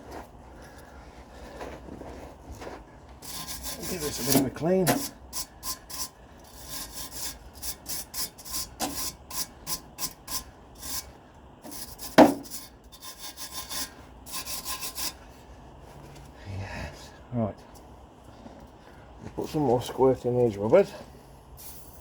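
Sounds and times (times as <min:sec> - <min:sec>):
scraping pipe by hand: 0:03.2 - 0:15.2.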